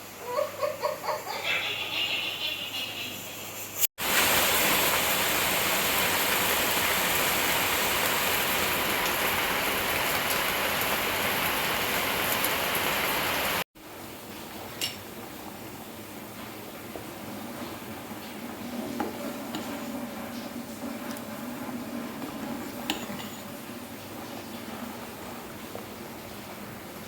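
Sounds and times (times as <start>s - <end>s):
heavy rain falling: 4.0s - 13.6s.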